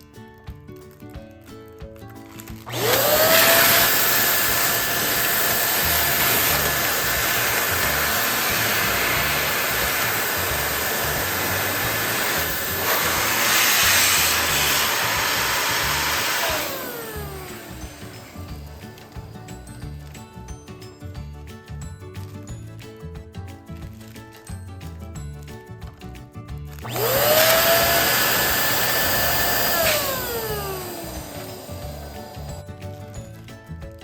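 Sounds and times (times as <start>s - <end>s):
soft background music: 0.0s - 34.0s
electric balloon pump whining: 2.5s - 20.4s, 26.7s - 33.5s.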